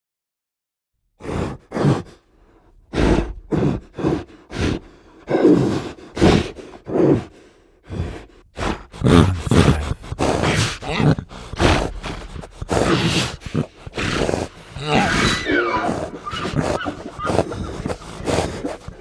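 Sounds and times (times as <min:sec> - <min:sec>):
creature grunts and growls: 0:09.1 - 0:10.1.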